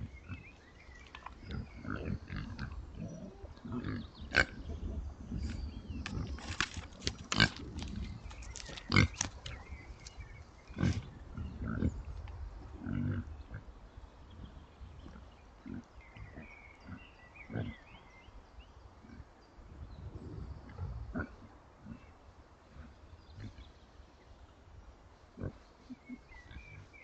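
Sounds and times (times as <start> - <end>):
pigs grunting: 1.3 - 9.7, 10.7 - 12.0, 12.7 - 13.7, 15.0 - 17.8, 20.6 - 22.1, 25.4 - 26.9.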